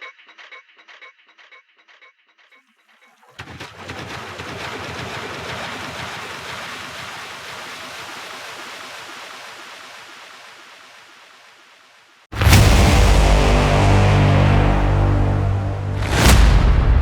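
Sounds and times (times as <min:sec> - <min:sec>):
rushing sci-fi whoosh: 0:12.4 - 0:17.0.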